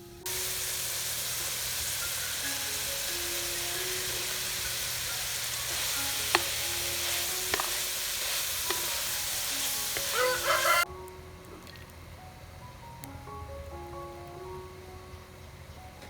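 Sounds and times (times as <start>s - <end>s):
food sizzling in a pan: 0.0s - 10.9s
utensil clicking against pan: 3.8s - 10.6s
rooster crowing: 10.0s - 10.9s.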